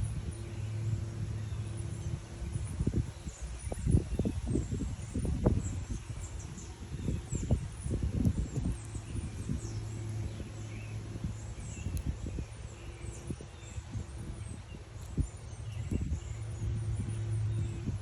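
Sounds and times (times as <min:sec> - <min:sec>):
low hum: 0:00.0 - 0:18.0
small birds chirping: 0:00.0 - 0:18.0.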